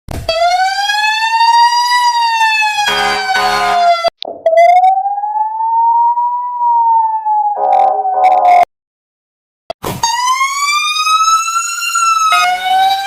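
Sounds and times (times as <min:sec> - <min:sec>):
fire truck siren wailing: 0:00.3 - 0:08.7, 0:09.9 - 0:13.0
short siren blasts: 0:00.3 - 0:08.7, 0:09.8 - 0:13.0.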